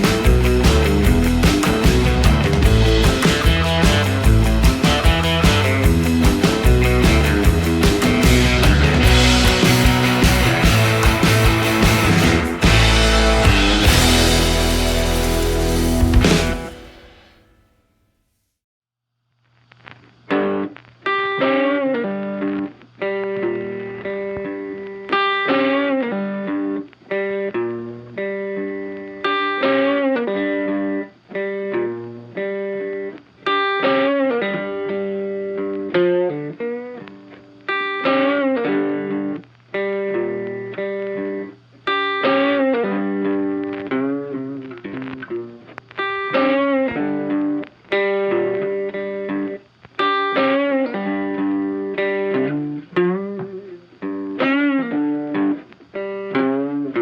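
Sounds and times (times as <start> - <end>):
funky background music: 0.0 - 17.3.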